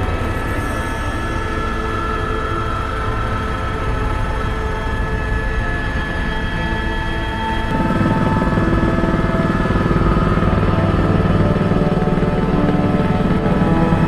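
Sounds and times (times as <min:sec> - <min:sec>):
helicopter engine and rotor: 0:00.0 - 0:14.0.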